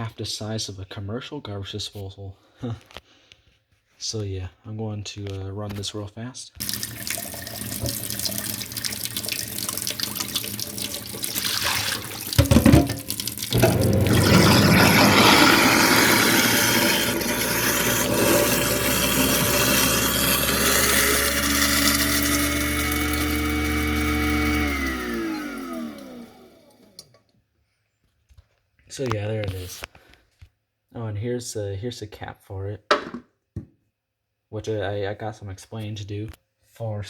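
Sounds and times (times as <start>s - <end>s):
garbage disposal grinding food: 6.6s - 27.0s
tap water running: 6.6s - 27.0s
garbage disposal motor whine: 6.6s - 27.1s.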